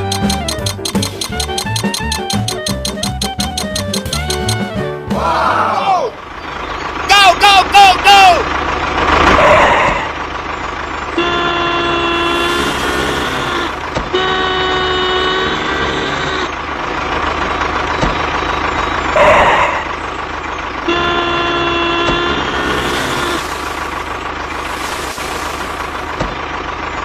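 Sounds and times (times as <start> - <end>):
vehicle horn blasts: 11.1 - 13.4, 14.1 - 16.0, 20.8 - 23.8.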